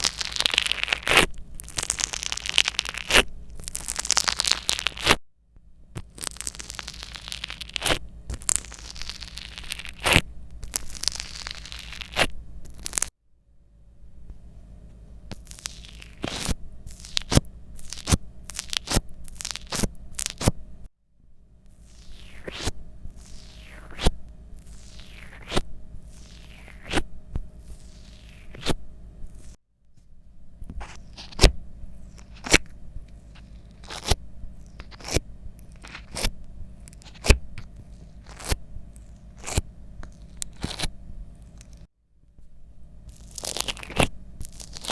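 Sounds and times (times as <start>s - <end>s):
slime popping and crackling: 0.0s - 5.2s, 6.0s - 13.1s, 15.3s - 20.5s, 21.8s - 27.0s, 33.4s - 40.9s, 43.1s - 44.9s.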